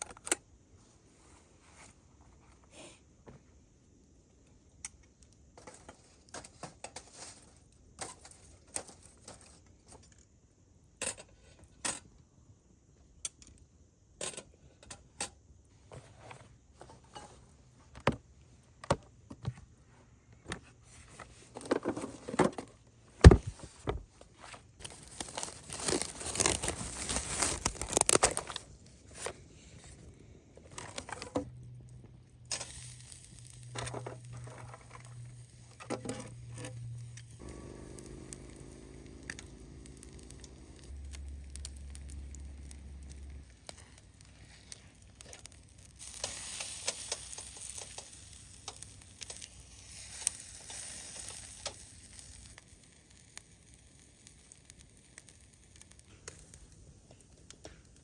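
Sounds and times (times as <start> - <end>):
crinkling rustle: 5.6 - 10.3, 20.6 - 58.0.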